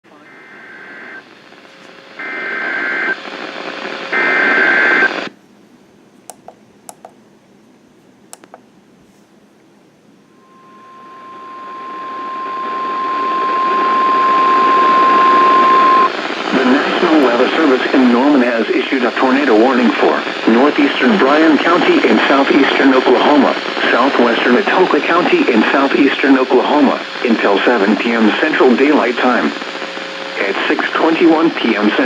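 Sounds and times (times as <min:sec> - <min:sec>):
radio hiss: 0:00.1 - 0:05.3, 0:10.4 - 0:32.0
screeching digital data bursts: 0:10.4 - 0:16.1
steady alarm tone: 0:10.4 - 0:16.2.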